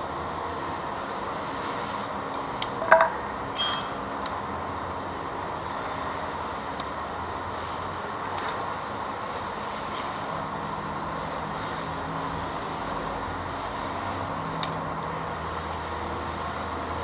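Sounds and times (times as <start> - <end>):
sharp metallic clinks: 3.5 - 4.1.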